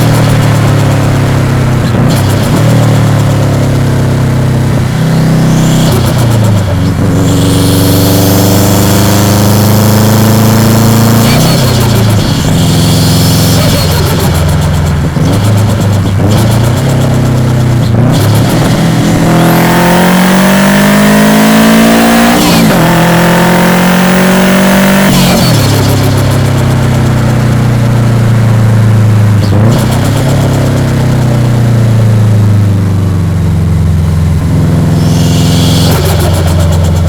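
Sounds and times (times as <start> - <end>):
turbo flutter chattering: 0.0 - 19.8, 34.5 - 37.0
car engine accelerating through gears: 0.0 - 37.0.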